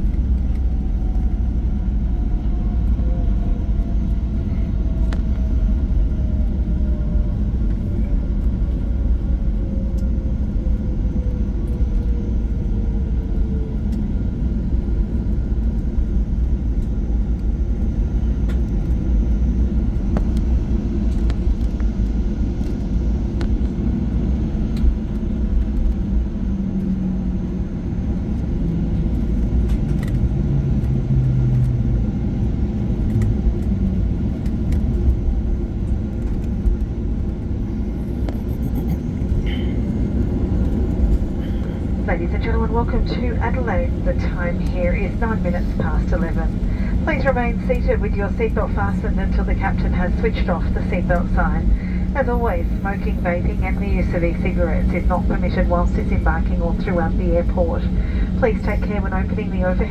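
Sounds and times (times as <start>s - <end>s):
jet engines low rumble: 0.0s - 59.9s
falling engine whine: 35.6s - 59.9s.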